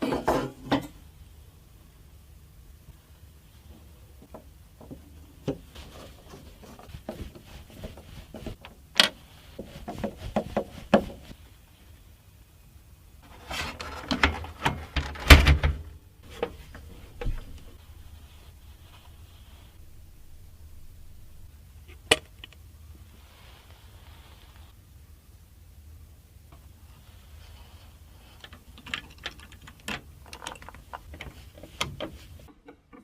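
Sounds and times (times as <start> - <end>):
knocks and scraping: 0.0 - 1.0, 4.2 - 11.4, 13.2 - 22.5, 27.6 - 33.0
hands handling computer parts: 13.2 - 19.9, 28.4 - 33.0.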